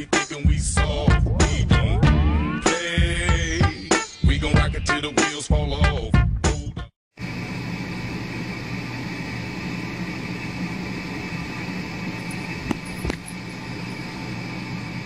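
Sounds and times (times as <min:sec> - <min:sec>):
mechanical hum and hiss: 0:07.2 - 0:15.0.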